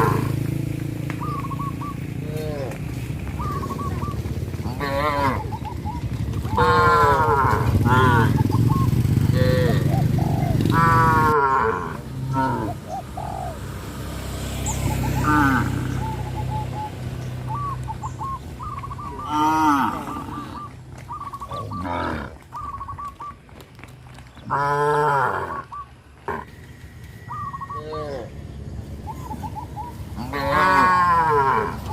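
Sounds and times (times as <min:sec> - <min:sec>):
cattle mooing: 0:04.7 - 0:05.5, 0:06.6 - 0:08.4, 0:09.3 - 0:09.9, 0:10.7 - 0:12.8, 0:15.2 - 0:16.0, 0:19.2 - 0:20.7, 0:21.5 - 0:22.4, 0:24.5 - 0:26.6, 0:30.2 - 0:31.9.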